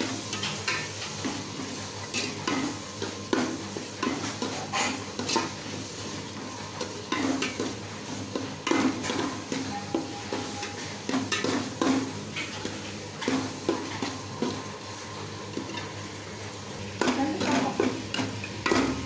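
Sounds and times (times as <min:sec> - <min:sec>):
food sizzling in a pan: 0:00.0 - 0:19.0
utensil scraping a pan: 0:04.1 - 0:05.6.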